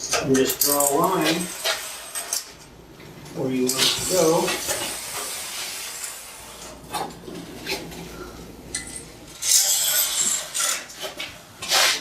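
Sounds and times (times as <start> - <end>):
marker scraping on steel plate: 9.6 - 12.0.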